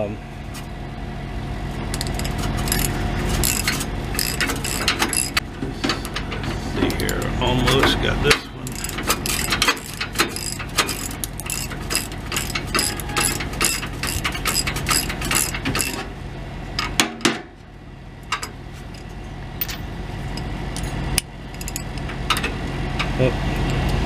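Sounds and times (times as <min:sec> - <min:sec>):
steady low hum: 0:00.0 - 0:24.0
ratchet wrench clicking: 0:01.9 - 0:05.4, 0:08.7 - 0:16.0
metal tools knocking: 0:02.0 - 0:16.0.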